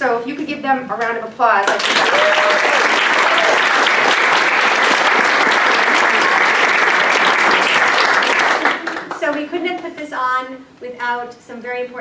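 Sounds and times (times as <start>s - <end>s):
audience applauding: 1.6s - 9.5s.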